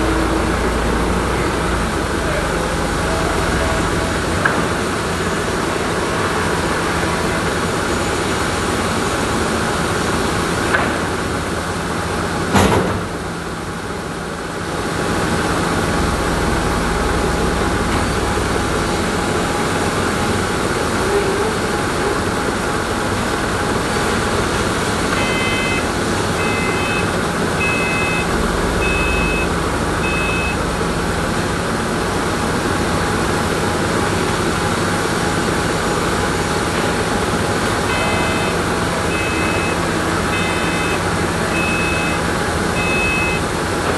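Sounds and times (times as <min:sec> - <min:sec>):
sawmill machinery running: 0:00.0 - 0:43.9
short electronic beeps: 0:25.2 - 0:30.6, 0:37.9 - 0:42.2, 0:42.8 - 0:43.4.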